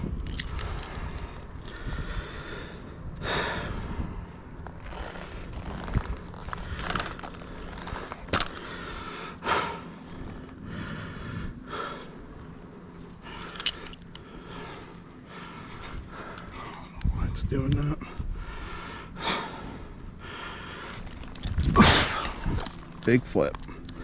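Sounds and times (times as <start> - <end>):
heavy breathing: 0.3 - 17.0, 17.9 - 22.9.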